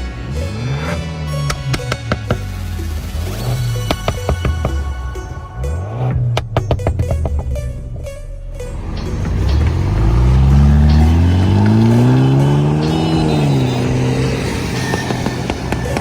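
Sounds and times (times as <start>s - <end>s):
car engine revving: 8.6s - 16.0s.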